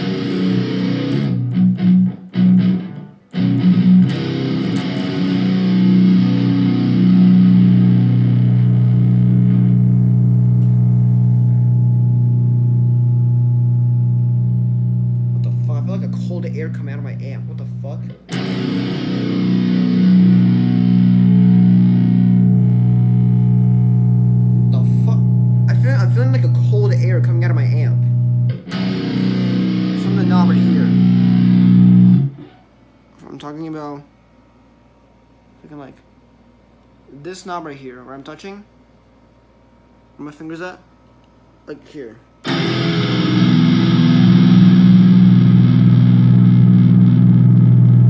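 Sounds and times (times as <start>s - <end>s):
electric guitar chords: 0.0s - 32.7s, 42.4s - 48.0s
low amp hum: 0.0s - 48.0s.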